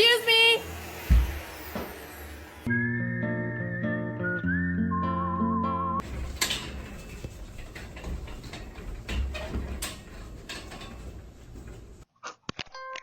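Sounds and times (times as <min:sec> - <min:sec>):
scattered clicks and knocks: 0:06.0 - 0:12.0.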